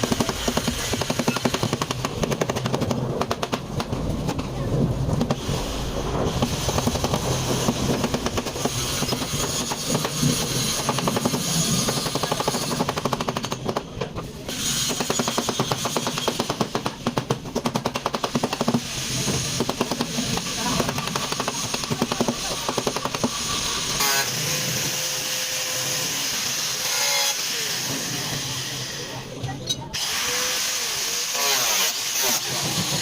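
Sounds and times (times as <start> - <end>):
power tool hammering rapidly: 0.0 - 4.0, 6.4 - 28.7.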